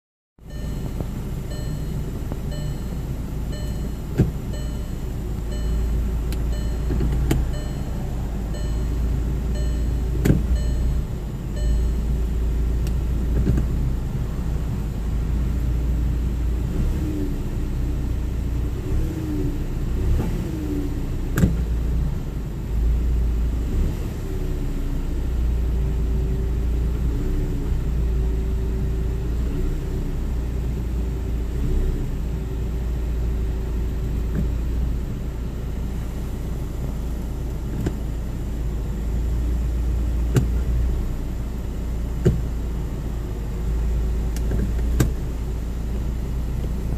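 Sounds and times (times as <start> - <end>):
car engine idling: 0.4 - 46.9
repeating electronic beep: 0.5 - 12.2
sharp transmission clunks: 3.5 - 12.1, 21.3 - 21.7, 44.3 - 45.3.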